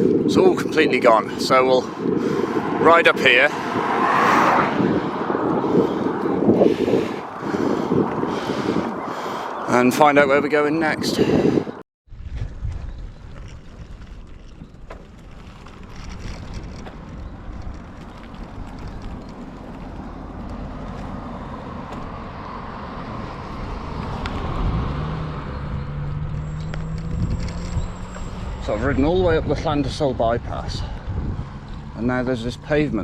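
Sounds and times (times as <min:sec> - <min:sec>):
road traffic: 0:00.0 - 0:11.8, 0:13.1 - 0:33.0
wind on microphone: 0:00.0 - 0:33.0
low engine hum: 0:12.9 - 0:33.0.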